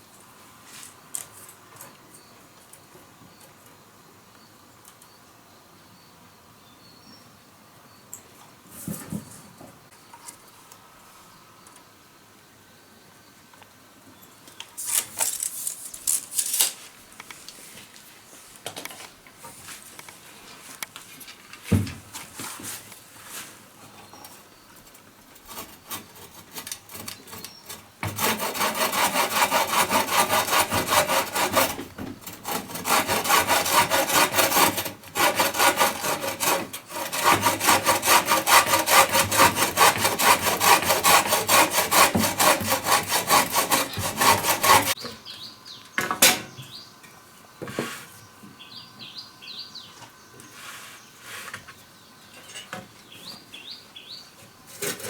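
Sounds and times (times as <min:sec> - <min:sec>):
hand saw cutting wood: 0:25.4 - 0:45.0.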